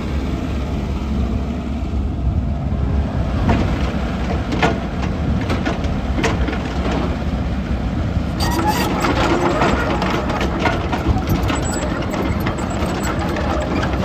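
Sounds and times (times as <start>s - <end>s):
excavator diesel engine idling: 4.1s - 14.0s.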